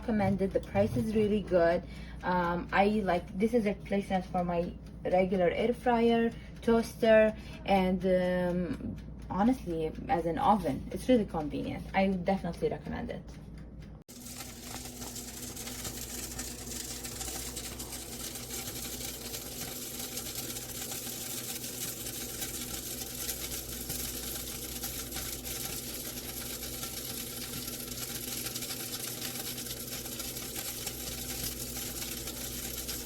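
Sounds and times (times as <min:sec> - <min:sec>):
toaster oven hum: 0:00.0 - 0:33.0
burgers sizzling: 0:14.1 - 0:33.0.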